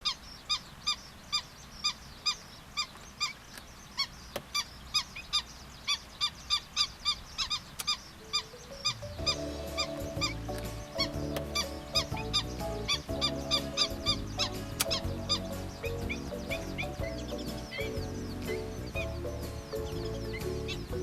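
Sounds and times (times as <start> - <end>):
bird calling sharply: 0.0 - 21.0
background music: 8.2 - 21.0.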